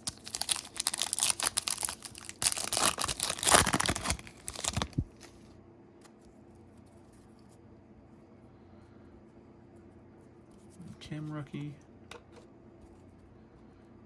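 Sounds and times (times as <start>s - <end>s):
cards rustling: 0.0s - 5.4s
foil wrapper tearing and crinkling: 0.0s - 5.4s.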